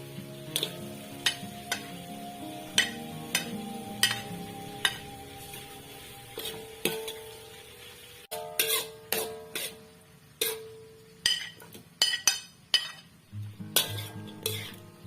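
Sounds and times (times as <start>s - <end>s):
background music: 0.0s - 7.6s, 13.3s - 15.0s
faint sizzling: 0.0s - 15.0s.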